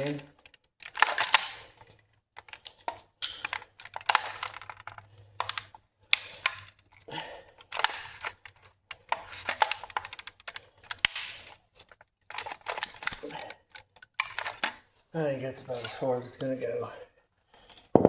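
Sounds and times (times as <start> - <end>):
plastic toy car cracking underfoot: 0.0 - 15.0.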